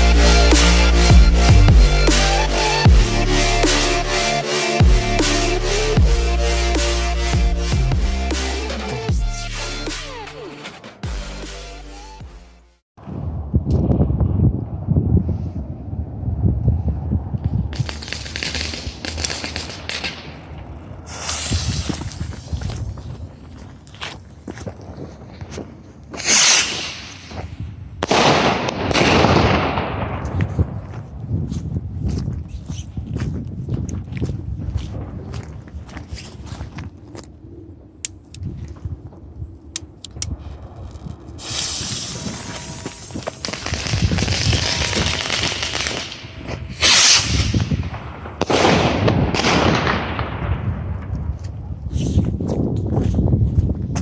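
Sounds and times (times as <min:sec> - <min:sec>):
firework rockets whooshing: 0:17.6 - 0:23.4, 0:26.2 - 0:30.3, 0:40.3 - 0:50.6
sharp pops: 0:21.1 - 0:22.8, 0:41.4 - 0:46.2.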